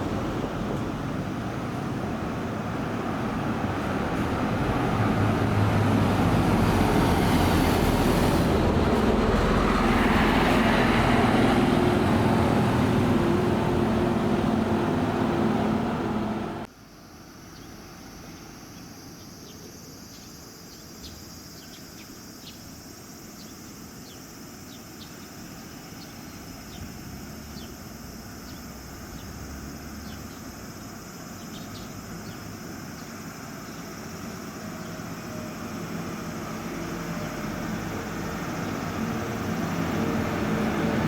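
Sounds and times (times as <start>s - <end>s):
diesel bus engine running: 0.0s - 16.7s, 26.5s - 41.0s
low traffic rumble: 0.0s - 16.7s, 25.4s - 41.0s
insects chirping: 0.0s - 41.0s.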